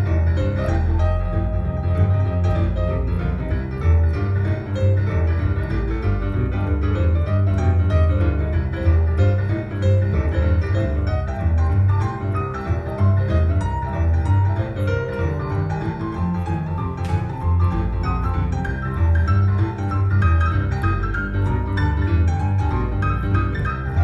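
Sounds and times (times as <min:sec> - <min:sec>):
piano music with deep bass: 0:00.0 - 0:24.0.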